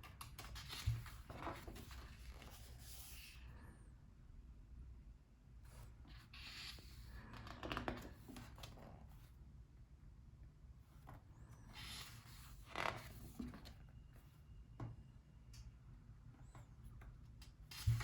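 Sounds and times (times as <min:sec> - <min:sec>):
book pages turning: 0:00.0 - 0:03.4, 0:06.1 - 0:08.8, 0:11.6 - 0:13.8, 0:17.5 - 0:18.0.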